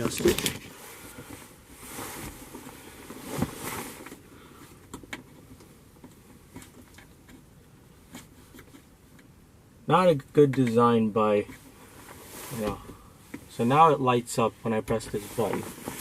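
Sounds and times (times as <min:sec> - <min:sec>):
rustling and scraping of bulb housing: 0:14.6 - 0:16.0.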